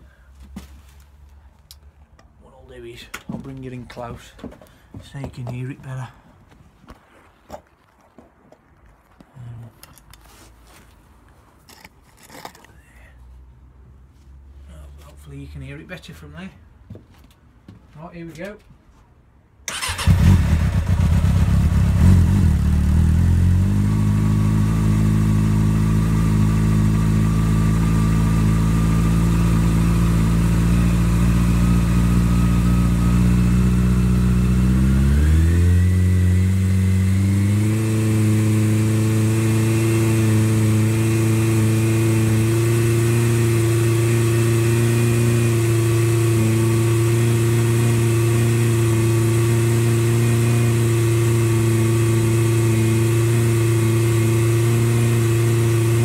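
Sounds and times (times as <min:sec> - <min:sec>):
motorcycle engine idling and revving: 0:19.7 - 0:56.0.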